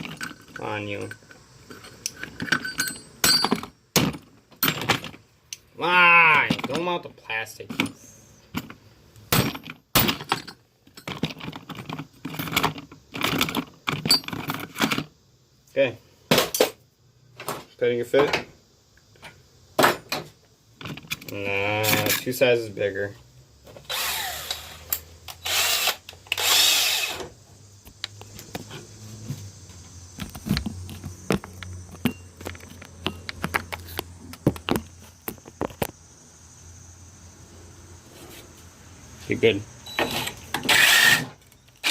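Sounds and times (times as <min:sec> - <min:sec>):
metal tools clicking and knocking: 0:00.0 - 0:03.7, 0:09.4 - 0:15.0
cordless drill running: 0:23.9 - 0:24.8, 0:25.4 - 0:27.3, 0:40.7 - 0:41.9.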